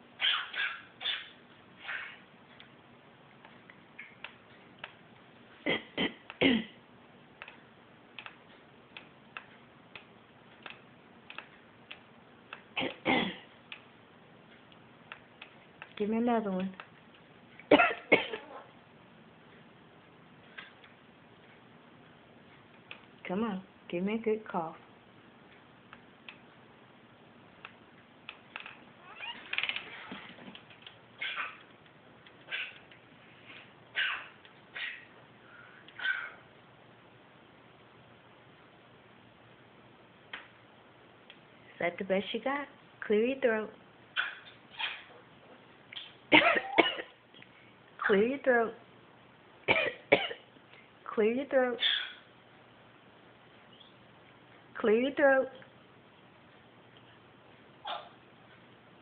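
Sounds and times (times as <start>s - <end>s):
soft clicks: 3.4s - 5.0s, 7.4s - 12.7s, 14.5s - 17.7s, 27.6s - 28.8s
parrot imitating cough: 17.7s - 18.7s, 51.8s - 52.2s
parrot mimicking cough: 17.7s - 18.7s, 31.2s - 31.6s, 34.0s - 35.0s, 36.0s - 36.4s, 51.8s - 52.2s.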